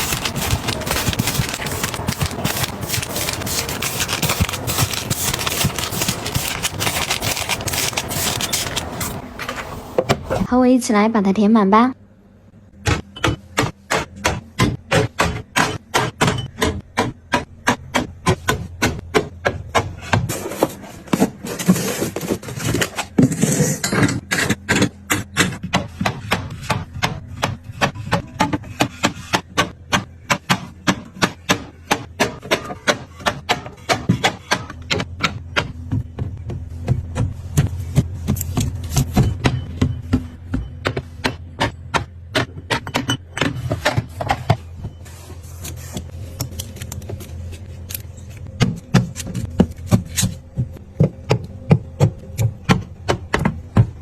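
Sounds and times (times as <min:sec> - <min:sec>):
hard items clacking into container: 0:00.0 - 0:09.2
rustling: 0:00.0 - 0:09.2.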